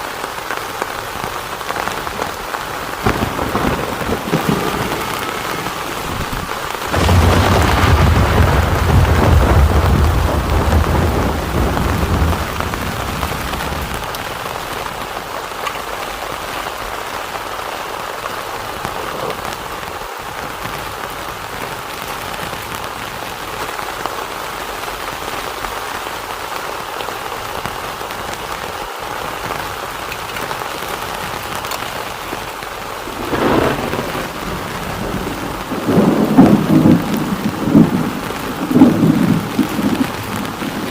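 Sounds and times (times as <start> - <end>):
heavy rain falling: 0.0 - 40.9
thunder rumbling: 1.5 - 15.0, 32.8 - 40.9.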